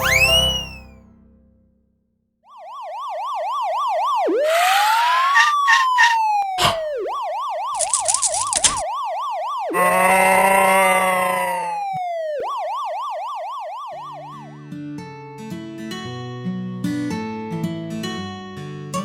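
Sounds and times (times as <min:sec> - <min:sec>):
emergency siren yelp and wail: 0:02.5 - 0:14.8.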